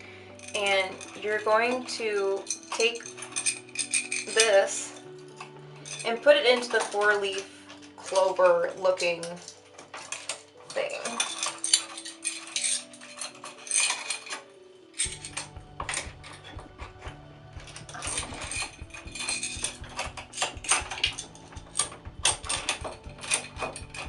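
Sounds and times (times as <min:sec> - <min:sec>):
metal door lock parts clinking: 0:00.4 - 0:24.0
steady low hum: 0:15.1 - 0:24.0.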